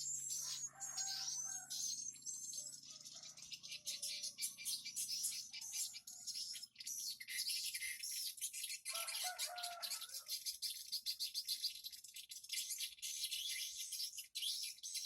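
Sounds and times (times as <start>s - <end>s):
lower chirping call: 0.0s - 7.9s.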